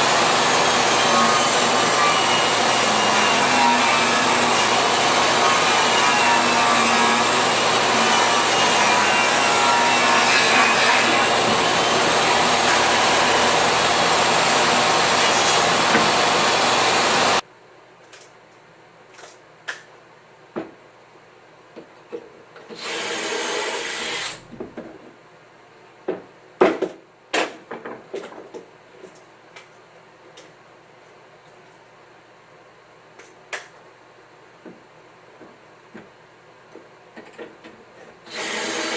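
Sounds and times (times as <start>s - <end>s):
power tool cutting wood: 0.0s - 17.4s, 22.8s - 24.4s, 38.3s - 38.9s.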